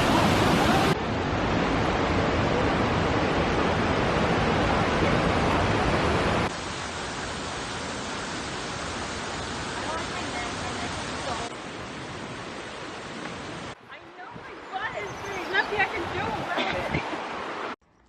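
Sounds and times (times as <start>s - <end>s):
waterfall rushing into pool: 0.0s - 13.8s.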